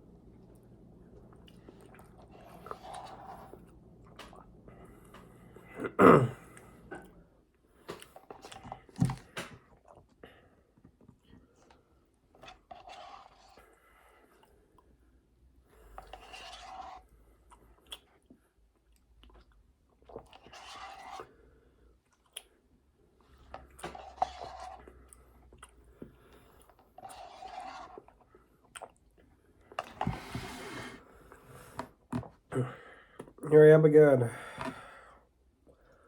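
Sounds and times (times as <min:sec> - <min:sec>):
person chewing food: 0:00.4 - 0:07.2, 0:17.4 - 0:31.4.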